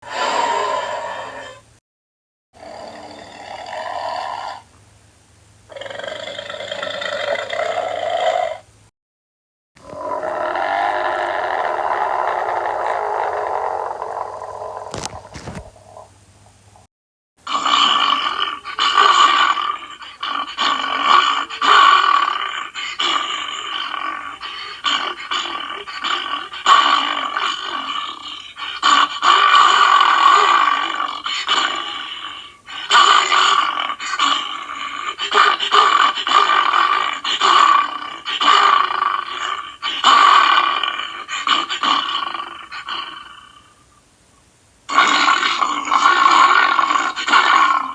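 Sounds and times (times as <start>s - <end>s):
cartoon bear growling roar: 0.0s - 1.7s, 9.8s - 15.6s, 17.5s - 43.7s, 44.9s - 47.9s.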